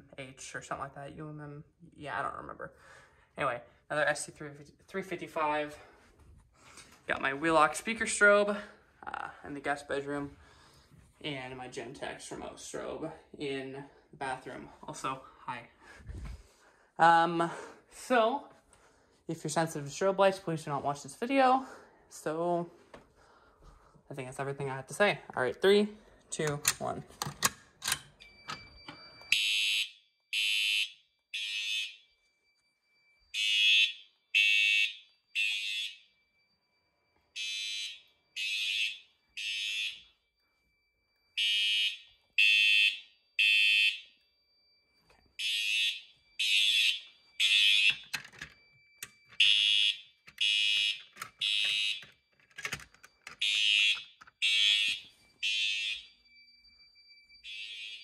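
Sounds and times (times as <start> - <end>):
fire alarm horns: 28.3 - 58.0
thin steady high tone: 40.0 - 41.4, 43.0 - 47.5, 55.0 - 58.0.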